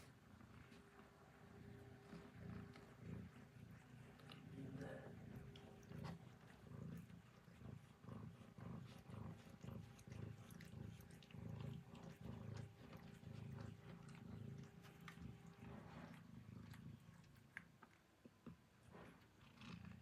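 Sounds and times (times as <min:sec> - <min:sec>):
cat purring: 0:00.0 - 0:20.0.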